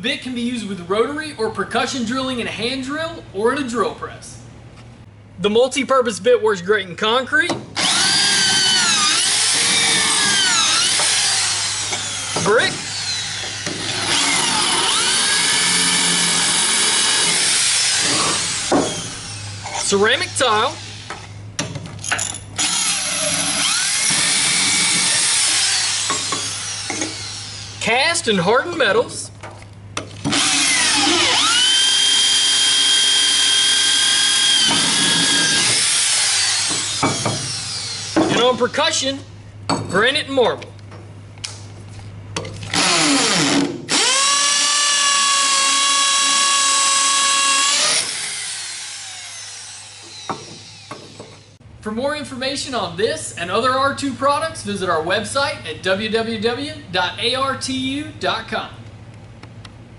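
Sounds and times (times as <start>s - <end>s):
power drill grinding into tile: 7.8s - 19.2s, 22.6s - 27.7s, 30.3s - 38.2s, 42.7s - 50.9s
hammer drill drilling into stone: 30.3s - 38.2s, 42.8s - 50.9s.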